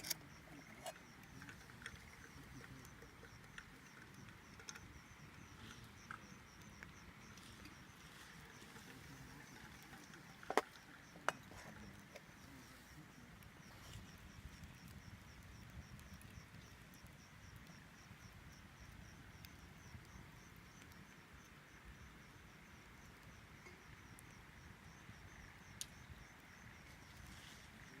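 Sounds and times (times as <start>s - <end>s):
fire snapping: 0.0s - 21.3s, 25.6s - 26.2s
campfire burning hiss: 0.0s - 28.0s
insect chirping: 0.0s - 28.0s.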